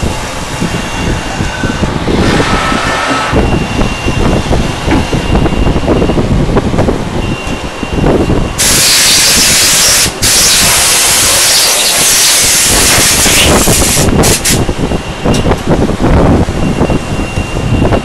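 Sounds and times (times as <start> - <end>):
compressed air hissing from nozzle: 8.6 - 14.6.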